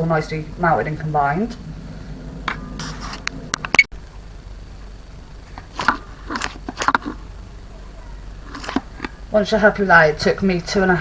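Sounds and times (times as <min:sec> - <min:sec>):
short scrapes: 0:02.0 - 0:03.5.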